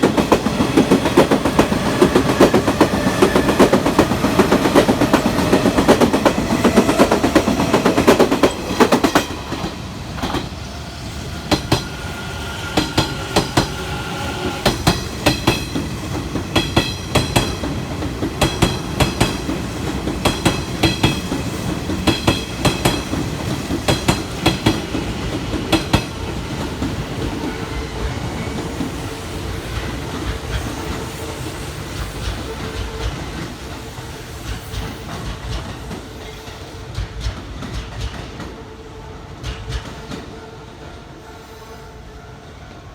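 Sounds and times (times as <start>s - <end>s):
train wheels clacking on rails: 0.0s - 41.7s
heavy train rumble: 0.0s - 42.9s.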